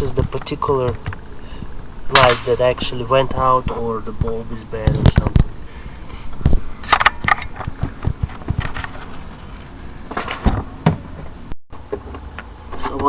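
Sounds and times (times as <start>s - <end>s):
clicks and knocks of handling: 6.4s - 10.5s.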